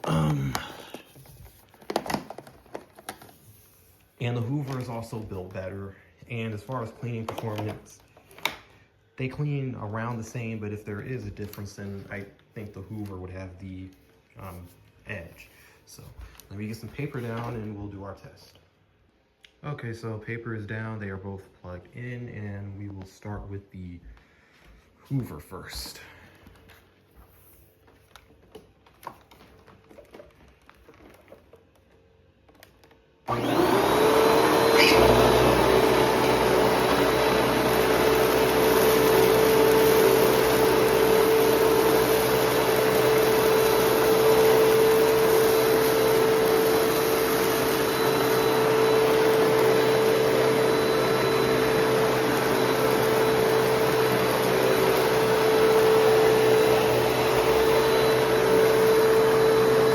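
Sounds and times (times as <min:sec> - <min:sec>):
vacuum cleaner motor whine: 0:33.2 - 0:59.9.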